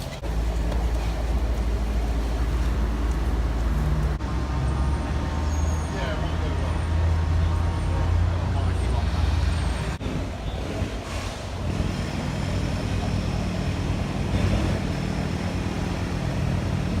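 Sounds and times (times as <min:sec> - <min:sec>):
city street traffic: 0:00.0 - 0:17.0.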